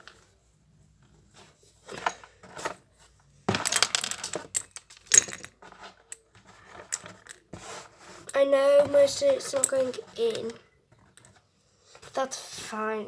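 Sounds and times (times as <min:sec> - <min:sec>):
small plastic pieces clattering: 0:03.5 - 0:07.4.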